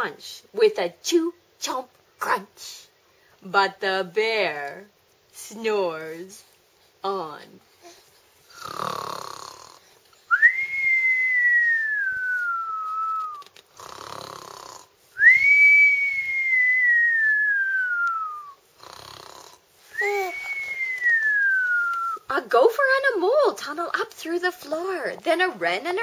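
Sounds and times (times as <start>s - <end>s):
person imitating cartoon snore: 8.5s - 9.8s, 13.8s - 14.9s, 18.8s - 20.2s.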